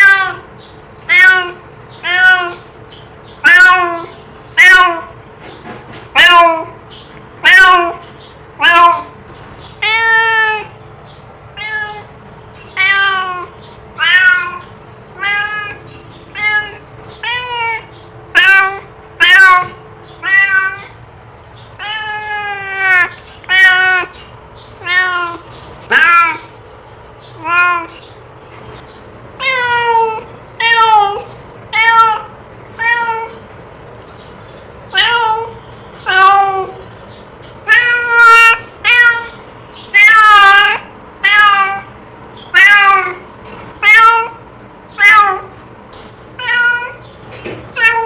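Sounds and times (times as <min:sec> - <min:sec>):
cat meowing: 0:00.0 - 0:02.7, 0:03.4 - 0:05.2, 0:06.1 - 0:06.8, 0:07.4 - 0:08.0, 0:08.6 - 0:09.2, 0:09.8 - 0:10.8, 0:11.6 - 0:21.0, 0:21.8 - 0:24.2, 0:24.8 - 0:26.6, 0:27.3 - 0:28.0, 0:29.4 - 0:33.4, 0:34.9 - 0:36.9, 0:37.6 - 0:45.6, 0:46.4 - 0:47.0, 0:47.7 - 0:48.0.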